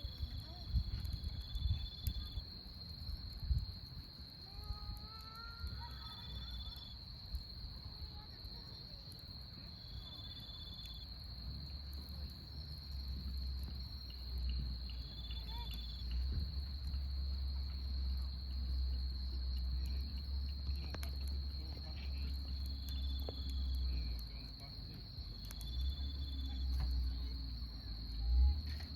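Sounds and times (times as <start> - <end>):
pulsed insect trill: 0.0 - 7.6, 9.4 - 28.9
low steady rumble: 11.0 - 28.9.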